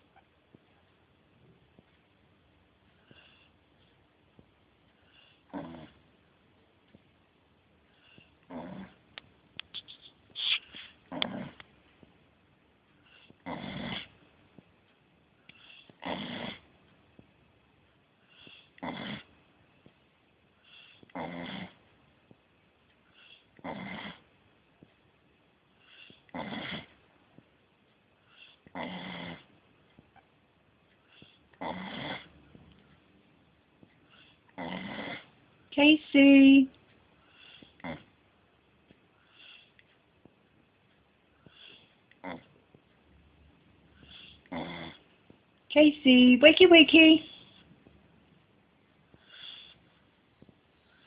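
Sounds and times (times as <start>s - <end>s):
dog snoring: 5.0s - 6.0s, 7.9s - 9.0s, 11.1s - 11.6s, 13.0s - 14.2s, 15.5s - 16.7s, 18.3s - 19.3s, 20.6s - 21.9s, 23.1s - 24.3s, 25.8s - 27.0s, 28.3s - 29.5s, 31.0s - 32.5s, 34.1s - 35.4s, 37.3s - 38.2s, 39.2s - 39.8s, 41.4s - 42.6s, 43.9s - 45.0s, 49.2s - 50.0s.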